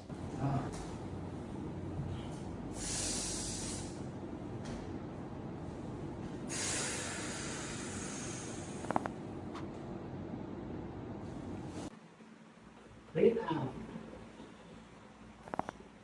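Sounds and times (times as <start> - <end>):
person breathing with hissing: 2.7 - 4.0, 6.5 - 9.1.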